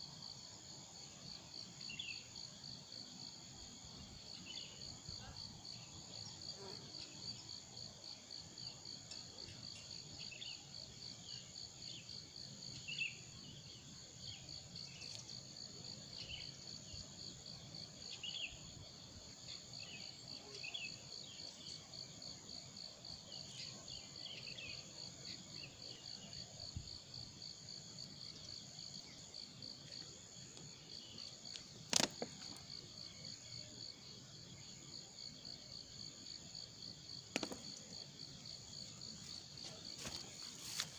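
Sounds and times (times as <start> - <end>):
insects trilling: 0.0 - 40.9.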